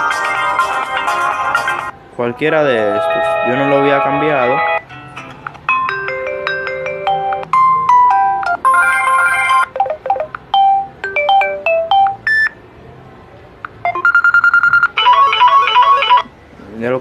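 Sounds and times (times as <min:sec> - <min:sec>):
phone notification chimes: 0:02.9 - 0:04.9, 0:05.7 - 0:12.5
rapid repeated beeps: 0:06.9 - 0:12.6, 0:13.8 - 0:16.2.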